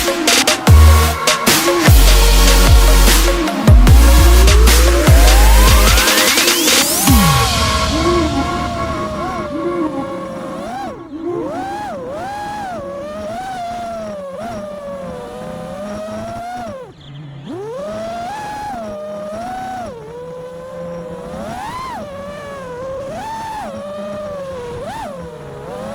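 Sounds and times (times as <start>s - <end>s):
quadcopter motors whining: 0.0s - 25.9s.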